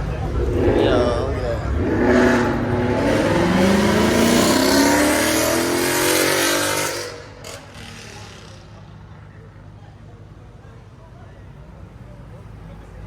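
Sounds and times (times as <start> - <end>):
car engine accelerating: 0.0 - 8.9.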